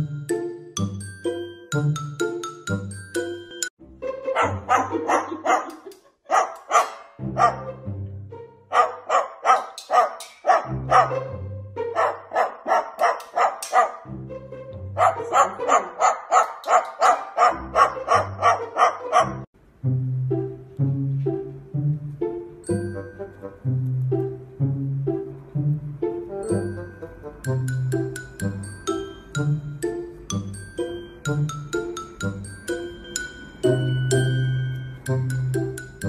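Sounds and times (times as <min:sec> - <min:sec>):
dog-bark sounds in time with beat: 0:04.3 - 0:07.8, 0:08.7 - 0:11.3, 0:11.9 - 0:14.1, 0:15.0 - 0:19.5.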